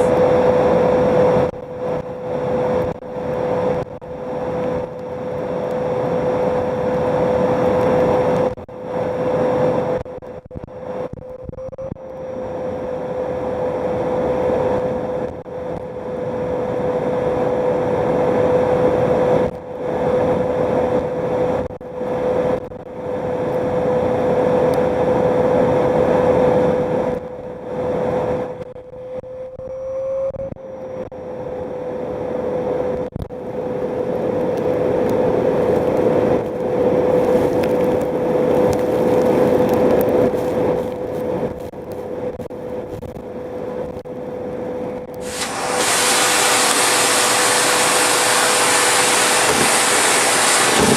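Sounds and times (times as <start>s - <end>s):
vacuum cleaner running: 45.2s - 50.9s.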